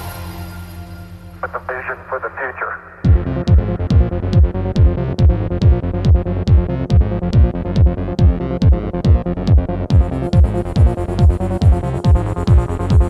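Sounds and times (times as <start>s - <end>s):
electronic trance music: 0.0s - 13.0s
synth chords: 2.8s - 13.0s
kick drum: 3.1s - 13.0s.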